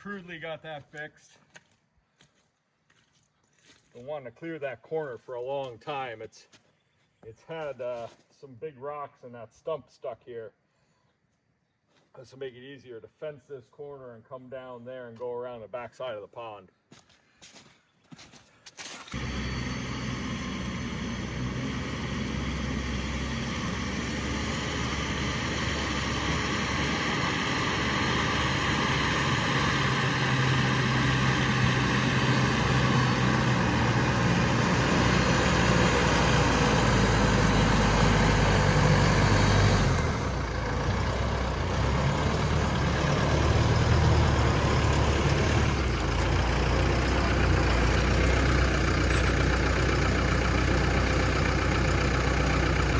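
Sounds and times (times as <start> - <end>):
diesel engine of farm machinery: 19.1 - 52.9.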